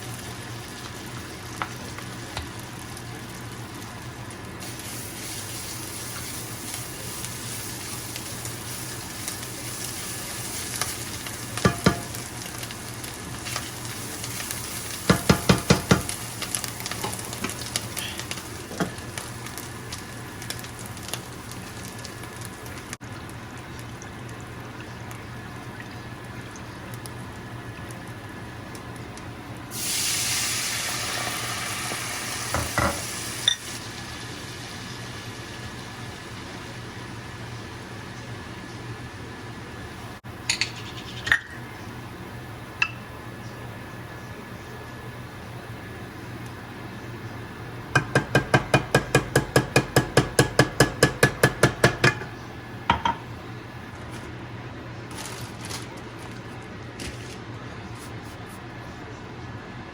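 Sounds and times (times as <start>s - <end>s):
food sizzling in a hot pan: 0.0s - 23.0s, 29.7s - 38.4s
cookware knocking: 48.0s - 52.3s, 52.9s - 53.3s.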